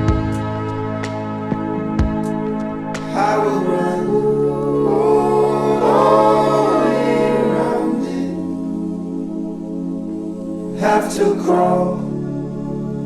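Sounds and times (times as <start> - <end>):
choir-like vocal harmonies: 3.0 - 13.0.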